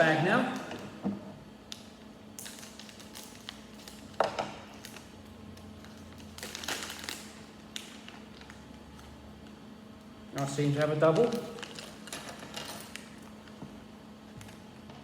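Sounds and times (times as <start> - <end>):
plastic bag crinkling: 2.4 - 5.2, 5.8 - 9.0, 10.4 - 13.6.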